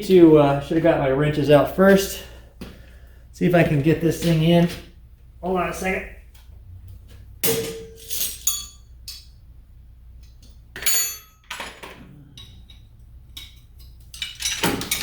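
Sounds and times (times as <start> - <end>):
metal hand tools clinking: 7.4 - 9.3, 10.8 - 11.8.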